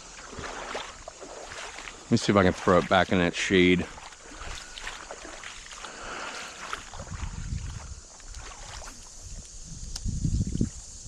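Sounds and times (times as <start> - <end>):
steady outdoor hiss: 0.0 - 11.0
wind buffeting microphone: 6.6 - 11.0.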